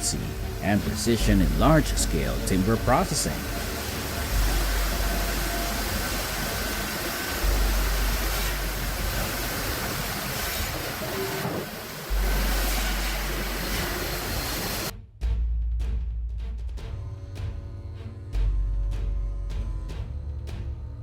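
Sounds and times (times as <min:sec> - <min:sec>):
loud machinery with deep hum: 0:00.0 - 0:14.9.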